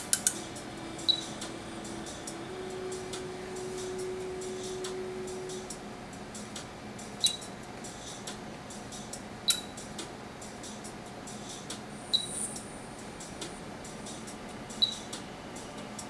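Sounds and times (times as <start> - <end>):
faint steady tone: 0.4 - 5.8.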